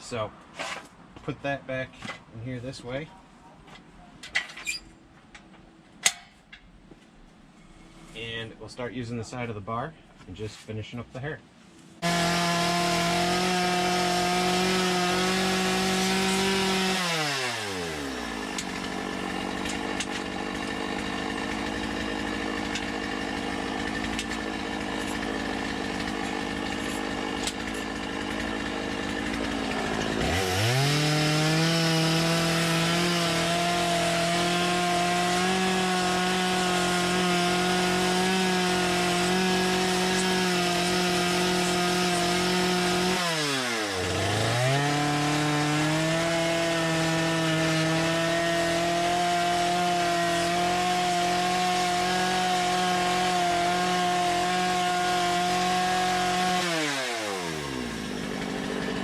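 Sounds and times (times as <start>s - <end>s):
chainsaw revving and idling: 12.0s - 59.0s.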